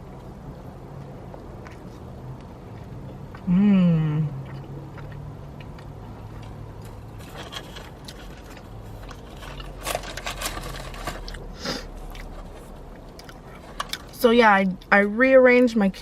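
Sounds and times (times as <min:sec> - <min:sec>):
chewing and mouth noises: 0:00.0 - 0:10.0, 0:11.3 - 0:15.1
low steady hum: 0:00.0 - 0:16.0
crinkles or crunches: 0:06.4 - 0:14.2.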